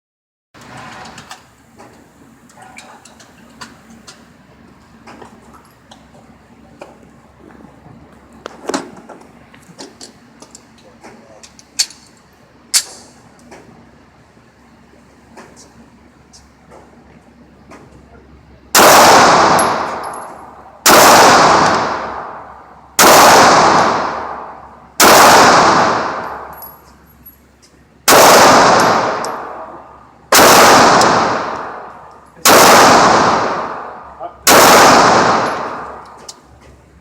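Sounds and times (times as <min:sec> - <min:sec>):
gunshots ringing out: 0:18.7 - 0:26.7, 0:28.1 - 0:36.3.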